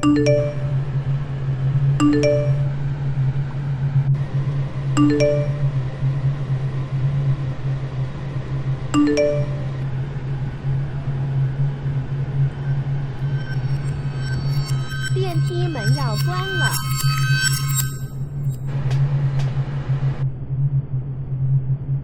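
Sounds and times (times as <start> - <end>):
elevator chime: 0.0 - 3.4, 4.8 - 6.5, 8.9 - 18.6
steady low hum: 0.0 - 22.0.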